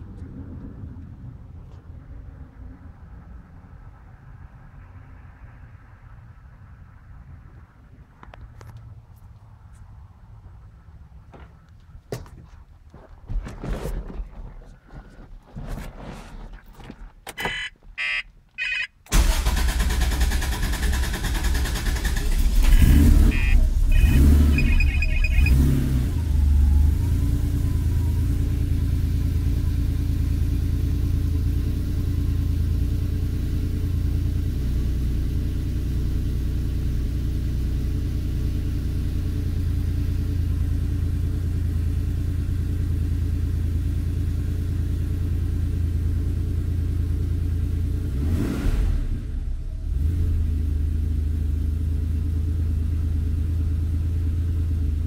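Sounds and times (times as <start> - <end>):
short clicks and tones: 17.3 - 19.1, 22.6 - 25.6
starter motor cranking: 19.1 - 22.8
car engine revving and idling: 19.1 - 55.0.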